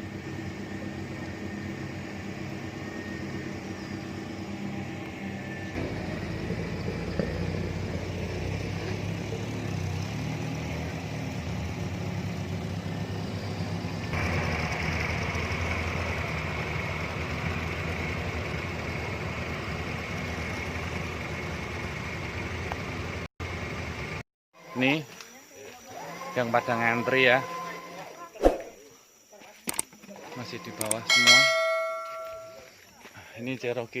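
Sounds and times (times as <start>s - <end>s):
vehicle engine at low revs: 0.0s - 24.2s.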